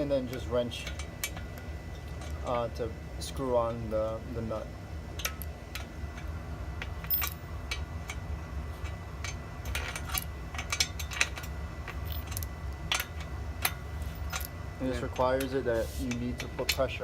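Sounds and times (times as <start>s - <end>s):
wrench clinking on metal bolt: 5.2s - 8.2s, 8.8s - 17.0s.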